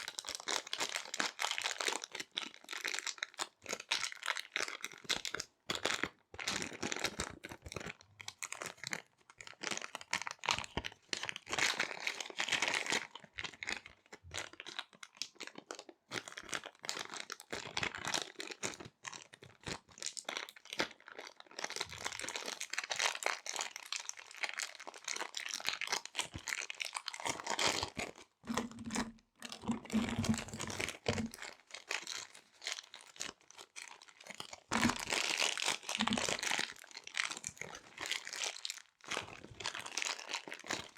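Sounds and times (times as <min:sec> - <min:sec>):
plastic zip bags crinkling: 0:26.4 - 0:40.9.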